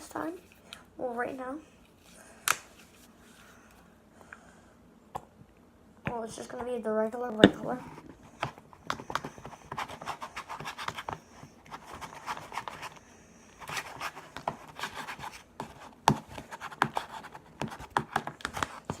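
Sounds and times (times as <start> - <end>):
pencil scraping and tapping in bowl: 7.4 - 13.0, 13.6 - 19.0.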